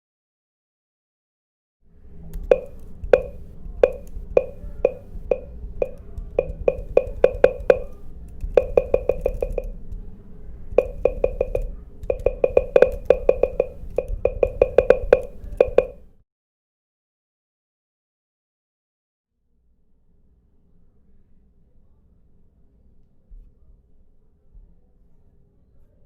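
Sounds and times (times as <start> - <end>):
short volume change pops: 2.5 - 8.0, 8.6 - 9.7, 10.8 - 16.0.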